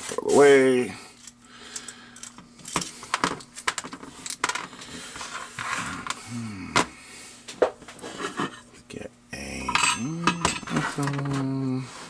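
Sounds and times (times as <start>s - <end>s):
metal tools clinking on workbench: 9.7s - 11.3s.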